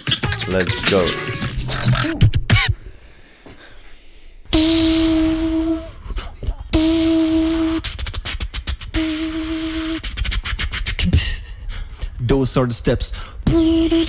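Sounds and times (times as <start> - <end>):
beatboxing sharp clicks: 0.0 - 2.9, 4.5 - 11.4, 13.4 - 14.0
beatboxing humming tones: 0.0 - 14.0
low rumble and hiss: 0.4 - 14.0.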